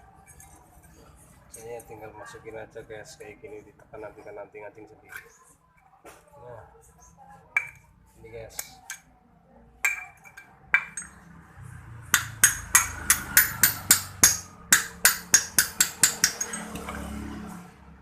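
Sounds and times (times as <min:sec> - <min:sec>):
hammer tapping on metal: 0:09.8 - 0:11.2, 0:12.1 - 0:17.0.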